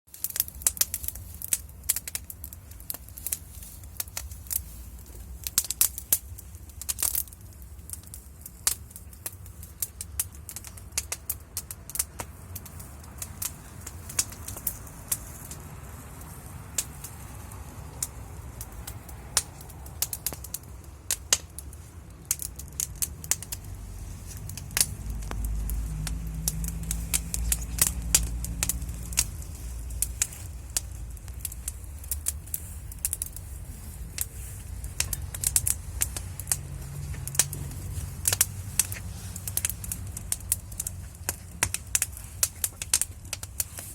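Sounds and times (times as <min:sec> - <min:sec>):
wood fire crackling: 0:00.1 - 0:43.9
low rumble: 0:12.3 - 0:43.8.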